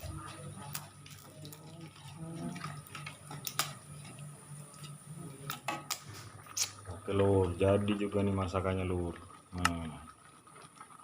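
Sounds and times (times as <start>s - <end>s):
utensils and cookware clicking: 0.0s - 6.8s.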